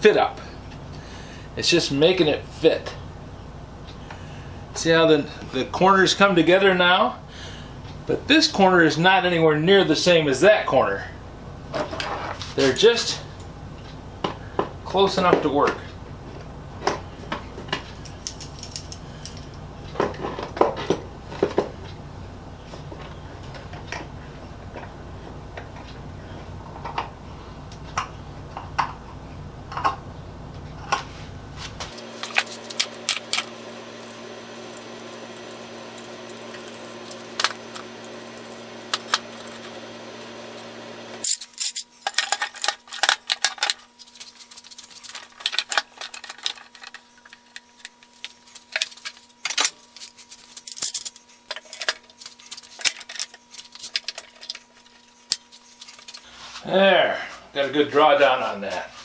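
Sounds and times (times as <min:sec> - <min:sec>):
low steady hum: 0:00.0 - 0:59.0
metal clamps clinking: 0:41.2 - 0:47.4, 0:48.2 - 0:54.7.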